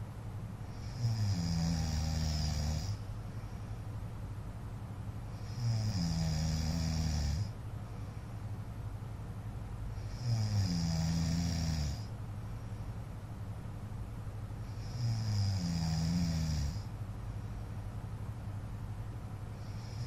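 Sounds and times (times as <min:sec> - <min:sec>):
man snoring: 0:00.7 - 0:03.0, 0:05.3 - 0:07.5, 0:10.0 - 0:12.1, 0:14.7 - 0:16.9, 0:19.6 - 0:20.0.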